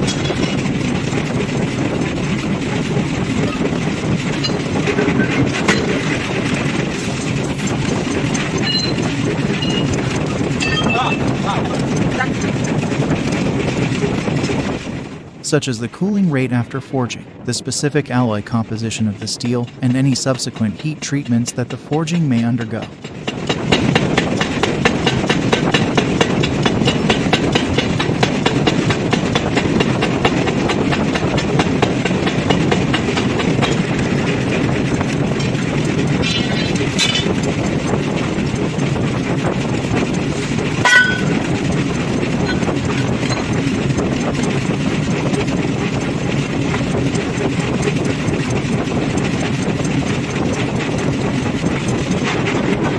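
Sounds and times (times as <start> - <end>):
industrial machinery noise: 0.0 - 52.9
high metallic squeals: 8.6 - 10.0.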